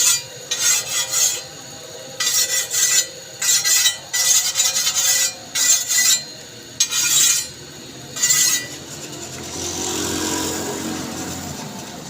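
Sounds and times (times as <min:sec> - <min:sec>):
hand file rasping on steel blade: 0:00.0 - 0:01.5, 0:02.2 - 0:07.5, 0:08.2 - 0:10.1
low mechanical hum: 0:00.0 - 0:12.0.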